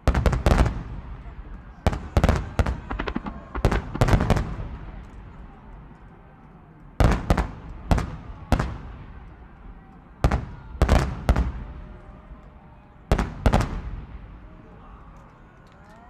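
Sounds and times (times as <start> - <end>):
fireworks booming: 0.0 - 6.0, 7.0 - 9.6, 10.2 - 12.0, 13.1 - 14.5.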